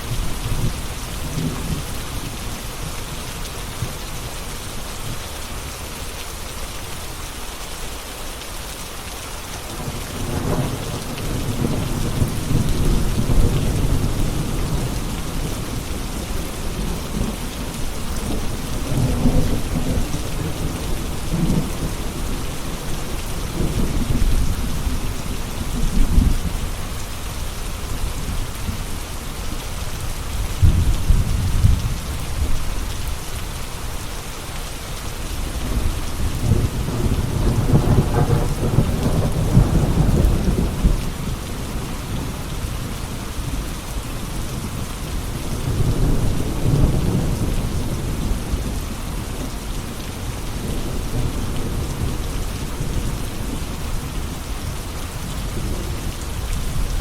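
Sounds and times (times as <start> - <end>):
steady rain falling: 0.0 - 57.0
rolling thunder: 30.6 - 32.6, 35.5 - 42.8.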